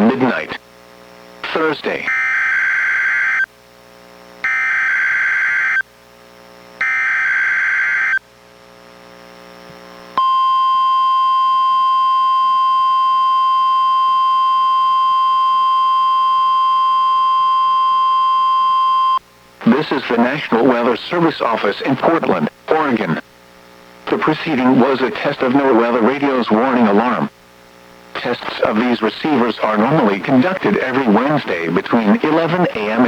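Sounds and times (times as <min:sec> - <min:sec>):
steady warning alarm tone: 0:02.0 - 0:03.5, 0:04.4 - 0:05.9, 0:06.8 - 0:08.2, 0:10.2 - 0:19.2
warbling data squawks: 0:06.8 - 0:08.2.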